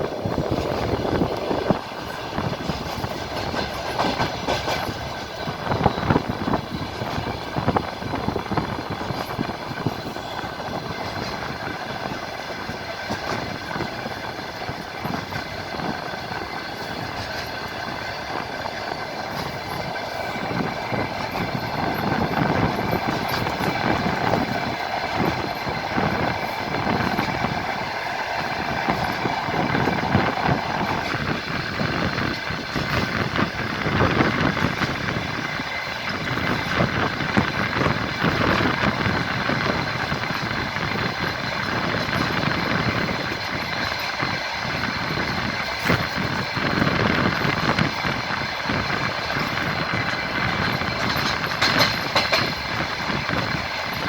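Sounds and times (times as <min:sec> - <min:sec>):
train rumble inside carriage: 0:00.0 - 0:54.0
wheels knocking over rail joints: 0:36.2 - 0:54.0.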